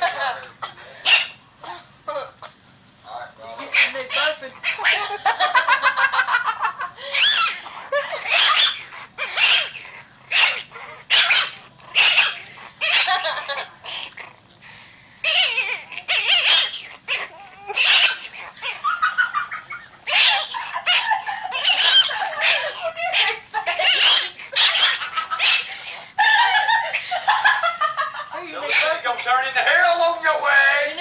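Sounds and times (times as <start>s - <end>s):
puppy yipping and whining: 1.0s - 1.4s, 3.6s - 5.1s, 7.0s - 14.4s, 15.2s - 27.1s, 28.5s - 29.3s.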